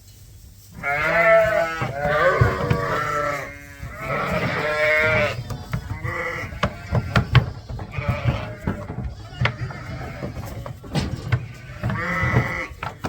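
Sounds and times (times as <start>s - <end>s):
sheep bleating: 0.8s - 13.0s
sharp clicks and knocks: 3.9s - 13.0s.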